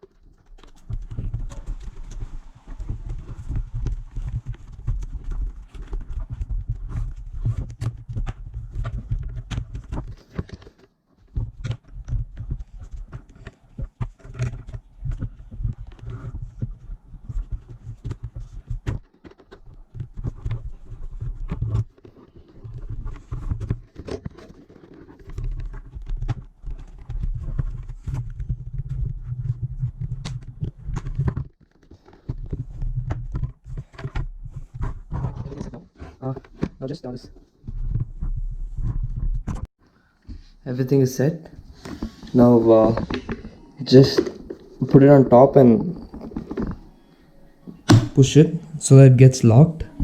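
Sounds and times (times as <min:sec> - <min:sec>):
knocks and taps on helmet: 0:47.8 - 0:48.2.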